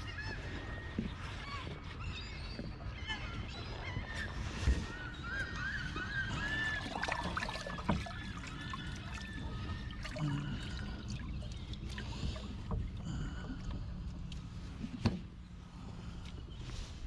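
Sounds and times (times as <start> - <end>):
water: 0.0 - 17.0
birds calling: 2.0 - 14.6.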